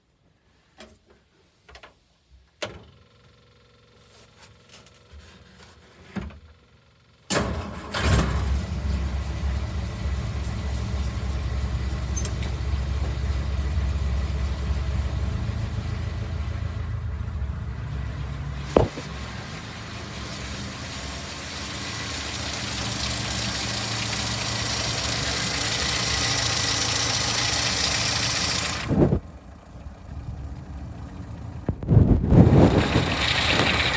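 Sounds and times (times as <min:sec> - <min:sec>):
car engine running: 0:08.5 - 0:33.9.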